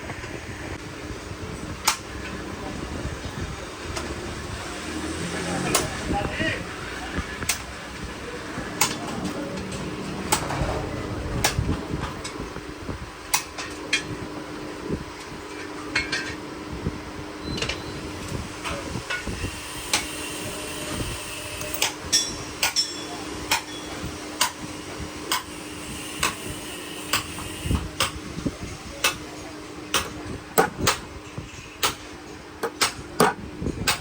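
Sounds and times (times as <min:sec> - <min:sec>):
steady hum: 0:06.0 - 0:15.0.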